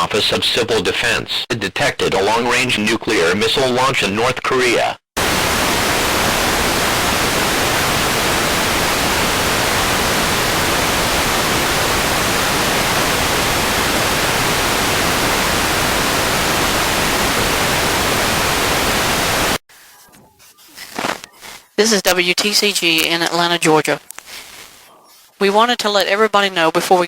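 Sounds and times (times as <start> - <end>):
broadcast static hiss: 5.2 - 25.8.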